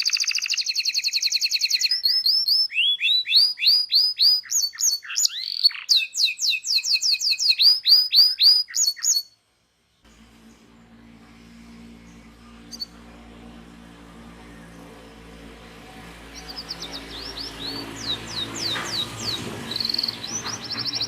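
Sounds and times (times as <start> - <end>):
canary singing trills: 0.0 - 9.4, 11.8 - 21.0
faint low hum: 9.5 - 21.0.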